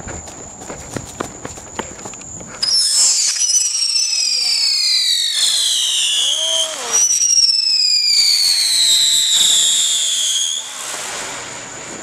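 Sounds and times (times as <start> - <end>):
whistling fireworks: 2.5 - 12.0.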